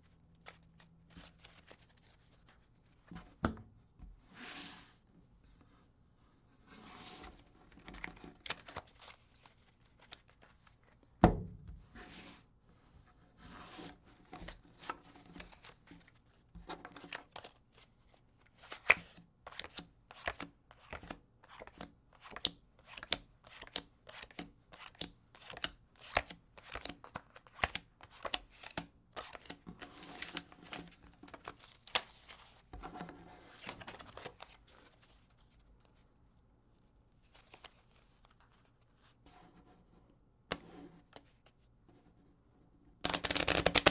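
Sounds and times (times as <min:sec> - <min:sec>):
playing cards shuffling: 0:43.0 - 0:43.9.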